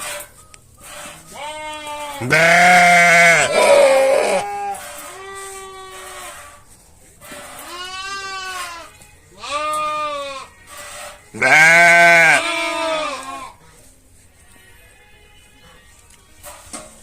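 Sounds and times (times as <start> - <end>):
sheep bleating: 1.3 - 6.2, 7.7 - 10.5, 11.3 - 13.6.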